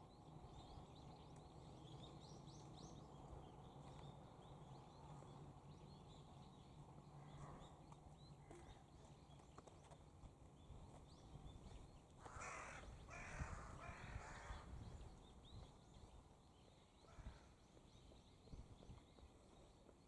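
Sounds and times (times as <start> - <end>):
small birds chirping: 0.0 - 20.0
crow cawing: 12.2 - 14.7.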